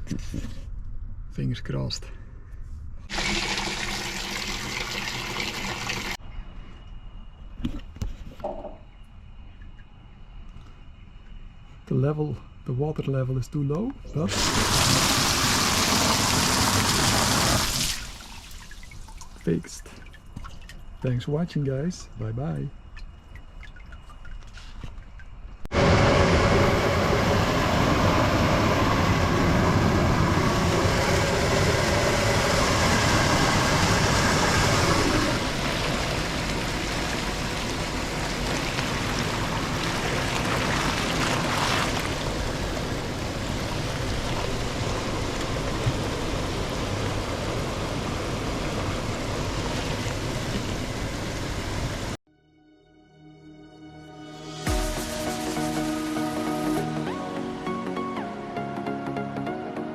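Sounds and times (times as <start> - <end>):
hot tub water churning and bubbling: 3.1 - 6.2, 14.3 - 21.0, 28.3 - 52.2.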